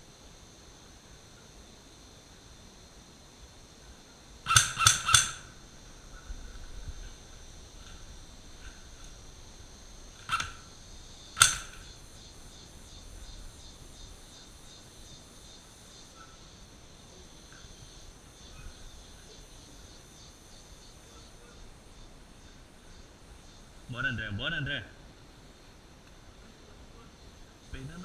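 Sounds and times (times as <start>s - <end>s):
insects droning: 0.0s - 28.0s
airsoft gun shots: 4.5s - 5.6s, 10.2s - 10.7s, 11.3s - 12.0s.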